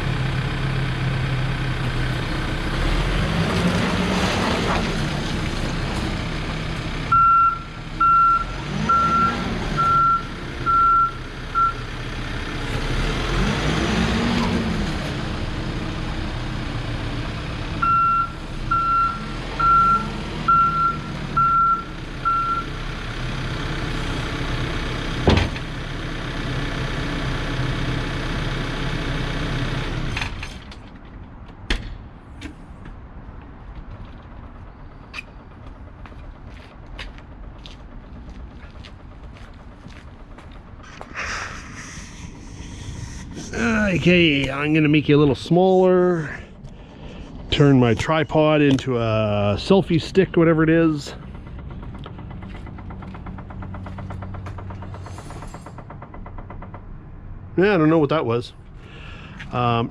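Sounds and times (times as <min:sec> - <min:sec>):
diesel engine revving: 0:00.0 - 0:30.8, 0:34.3 - 0:59.9
reverse alarm beeping: 0:07.1 - 0:11.8, 0:17.8 - 0:22.7.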